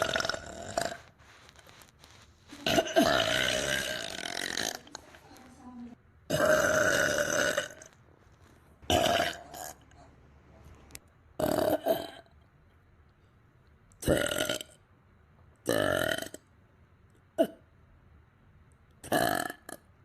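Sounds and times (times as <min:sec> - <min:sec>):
person burping loudly: 0:00.0 - 0:01.0, 0:02.6 - 0:05.0, 0:06.3 - 0:07.9, 0:08.9 - 0:09.9, 0:11.4 - 0:12.3, 0:14.0 - 0:14.8, 0:15.7 - 0:16.4, 0:17.4 - 0:17.6, 0:19.0 - 0:19.8.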